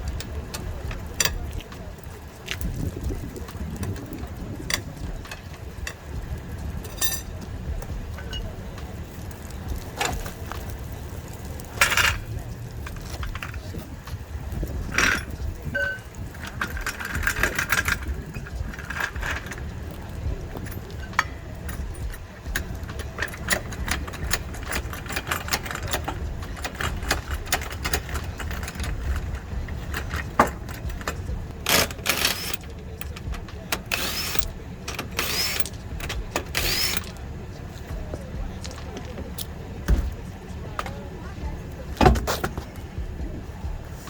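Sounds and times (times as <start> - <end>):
tools and metal parts clinking: 0.0 - 1.8, 3.4 - 6.2, 6.8 - 7.5, 8.2 - 9.0, 11.7 - 13.9, 14.8 - 37.2
car engine running: 0.0 - 44.0.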